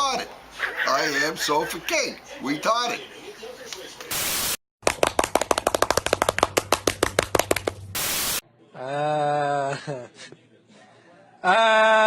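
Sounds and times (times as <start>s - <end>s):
burst of static: 4.1s - 4.6s, 7.9s - 8.4s
rapid sharp cracks: 4.8s - 8.2s.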